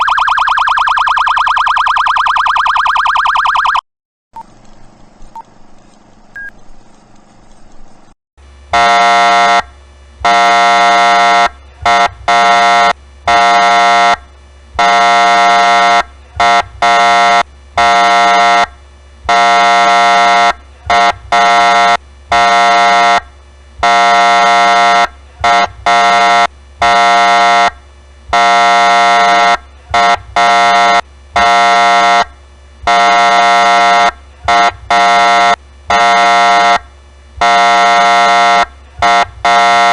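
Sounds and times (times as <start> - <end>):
police siren horn blasts: 8.7 - 39.9.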